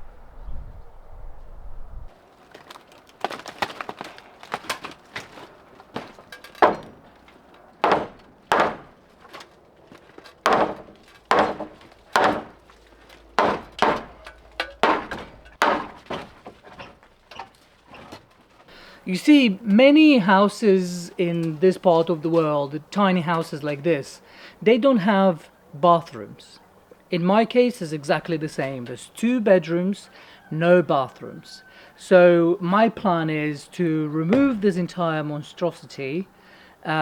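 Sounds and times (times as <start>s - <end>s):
wind rumble on microphone: 0.0s - 2.2s
heavy blows on wooden boards: 3.2s - 18.3s, 34.3s - 34.7s.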